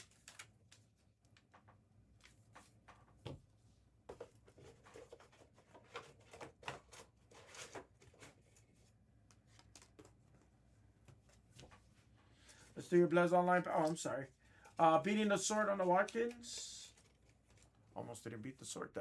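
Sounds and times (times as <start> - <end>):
trading cards rustling and tapping: 4.1 - 11.9, 13.6 - 17.8.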